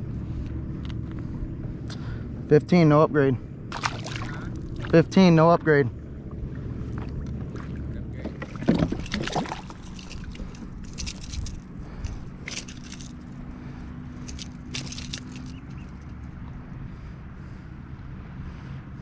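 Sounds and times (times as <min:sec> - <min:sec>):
steady low hum: 0:00.0 - 0:19.0
gear knocking and rattling: 0:08.2 - 0:16.2.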